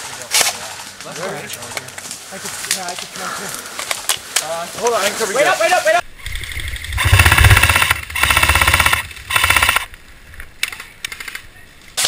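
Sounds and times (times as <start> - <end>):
airsoft gun firing bursts: 7.0 - 9.9.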